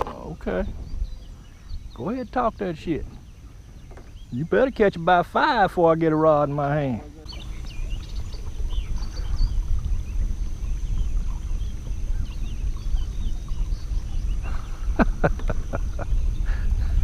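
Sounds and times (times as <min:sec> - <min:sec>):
faint bird chirps: 0:06.2 - 0:17.0
low rumble: 0:07.2 - 0:17.0.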